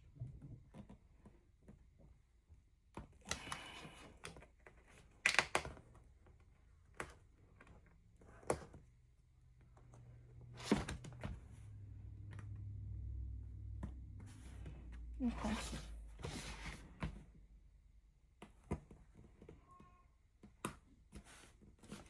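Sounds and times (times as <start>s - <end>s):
low hum: 9.9s - 16.2s.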